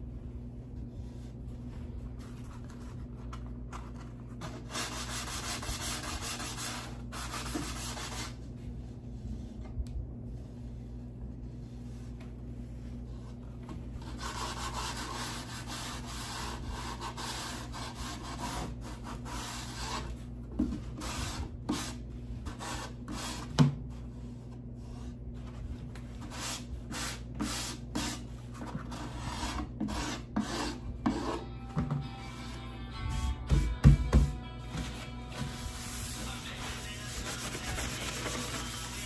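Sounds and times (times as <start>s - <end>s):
sanding wood: 4.6s - 8.3s, 35.4s - 39.0s.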